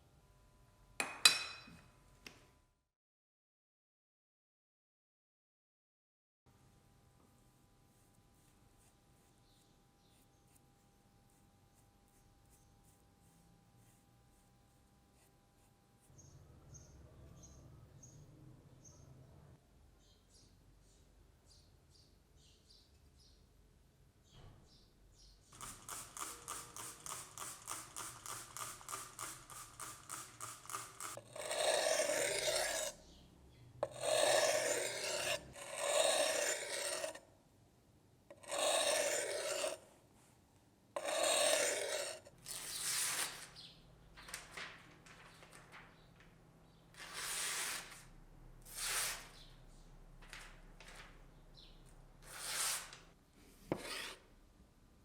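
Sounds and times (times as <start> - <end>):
knife blade scraping on abrasive: 25.6 - 33.0, 33.8 - 37.2, 38.3 - 39.8, 41.0 - 43.3, 47.0 - 48.0, 48.7 - 49.5, 52.2 - 53.0, 53.7 - 54.3.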